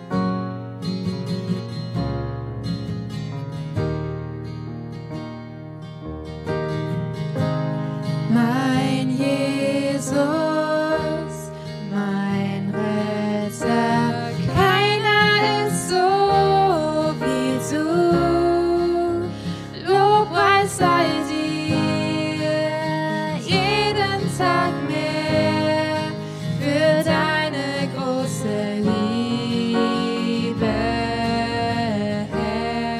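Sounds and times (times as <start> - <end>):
acoustic guitar: 0.0 - 32.9
person singing worship song: 8.3 - 32.9.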